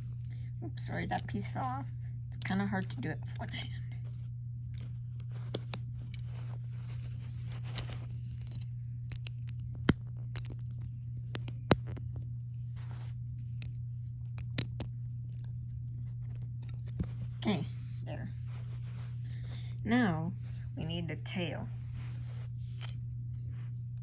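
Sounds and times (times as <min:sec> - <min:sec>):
steady low hum: 0:00.0 - 0:24.0
plastic pieces clicking together: 0:07.7 - 0:12.0.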